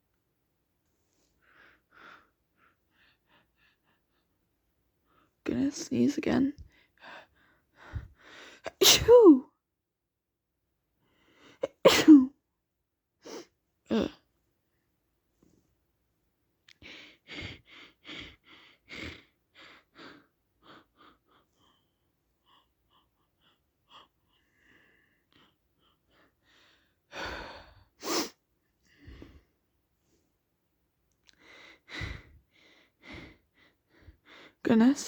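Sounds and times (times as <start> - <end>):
person sneezing: 8.7 - 9.4, 11.6 - 12.3.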